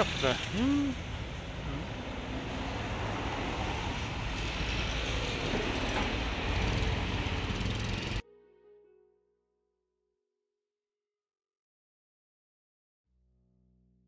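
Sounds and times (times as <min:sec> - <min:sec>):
street traffic rumble: 0:00.0 - 0:08.2.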